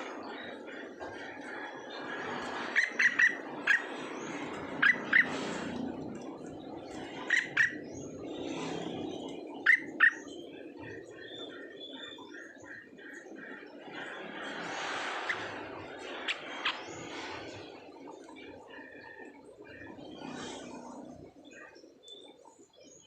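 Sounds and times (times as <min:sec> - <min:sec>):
animal high-pitched calls: 0:04.8 - 0:05.3, 0:07.2 - 0:07.8.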